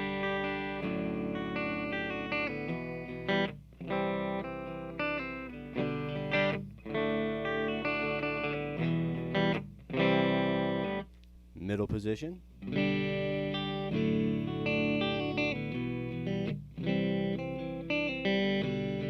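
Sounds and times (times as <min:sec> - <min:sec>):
electric guitar chords: 0:00.0 - 0:11.1, 0:12.6 - 0:19.0
low amp hum: 0:00.0 - 0:19.0.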